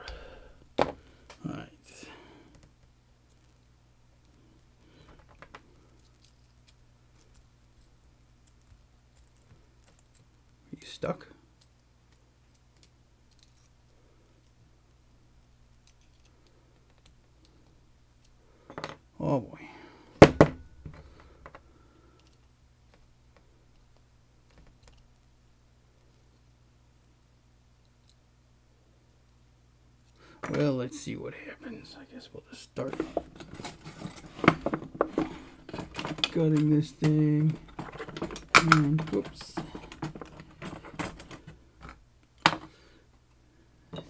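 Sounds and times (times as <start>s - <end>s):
lock clicking: 33.0s - 41.4s.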